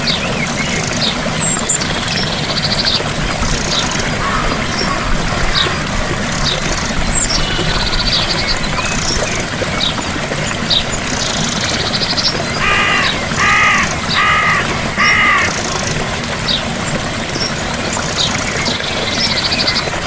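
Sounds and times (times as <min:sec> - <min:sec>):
gentle waterfall rushing: 0:00.0 - 0:20.0
large bird calling: 0:02.3 - 0:09.4, 0:12.4 - 0:16.1.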